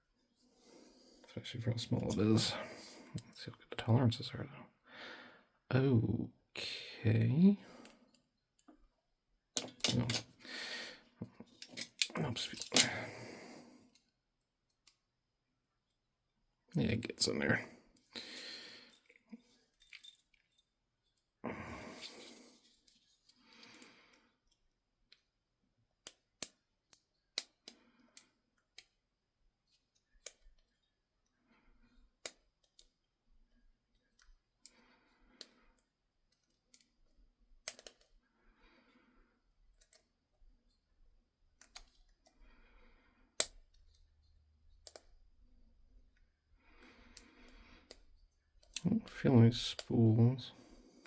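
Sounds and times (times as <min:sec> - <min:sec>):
lock pick clicking in padlock: 0:37.6 - 0:38.1.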